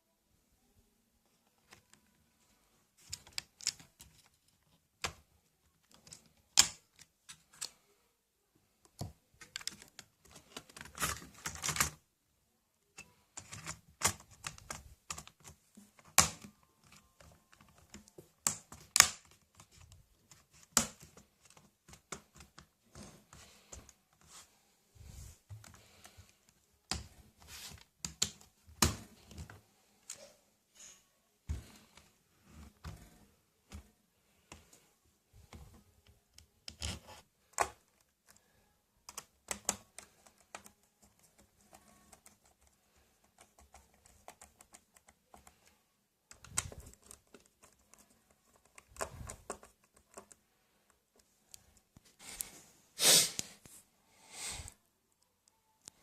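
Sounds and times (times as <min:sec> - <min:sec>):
laptop case parts clicking: 0:03.0 - 0:07.8, 0:08.8 - 0:12.0, 0:13.0 - 0:22.7.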